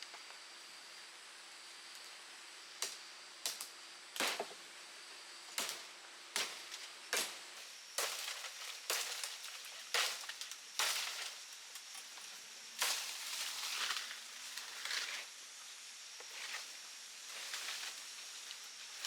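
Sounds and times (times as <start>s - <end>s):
sharp chopping strikes: 4.2s - 4.6s.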